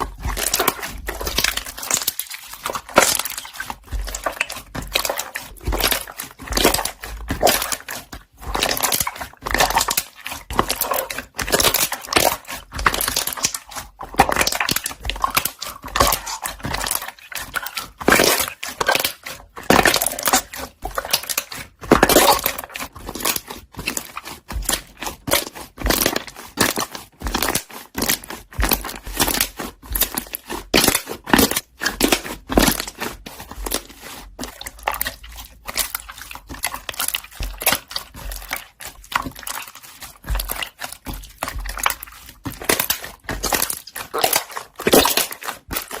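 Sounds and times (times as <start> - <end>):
slime squeezed with bubble pops: 0.0 - 46.0.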